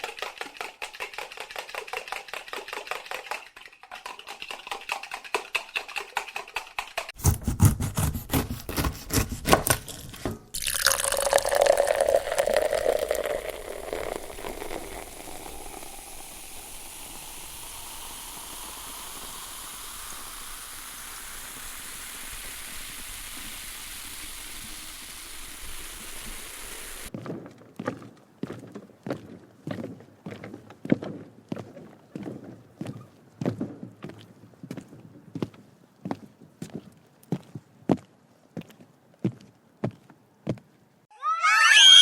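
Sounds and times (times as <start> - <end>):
champagne pouring and fizzing: 8.3 - 27.1.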